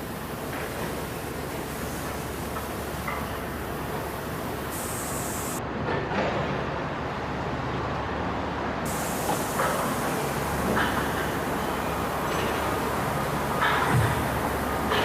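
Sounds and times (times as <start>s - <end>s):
rushing hiss: 0.0s - 5.6s, 8.9s - 15.0s.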